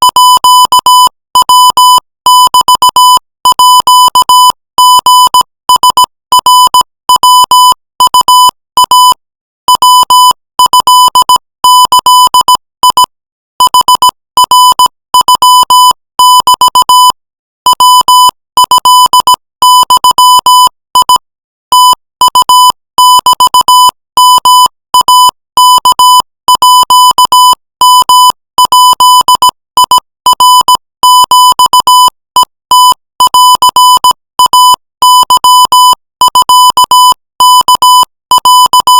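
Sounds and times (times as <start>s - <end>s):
morse code beeps: 17.7s - 20.1s.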